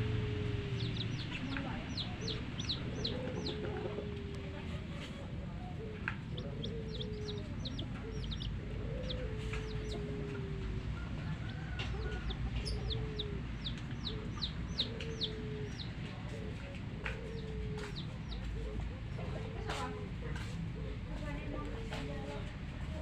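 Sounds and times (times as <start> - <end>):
low rumble: 0.0 - 4.9
hen clucking: 0.0 - 19.8
chicks peeping: 0.0 - 19.9.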